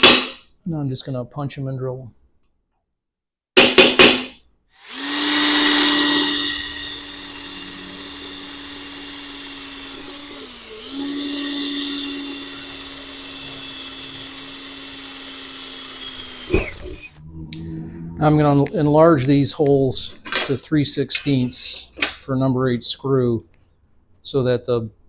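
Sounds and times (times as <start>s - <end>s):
electric drill drilling: 4.8s - 17.2s.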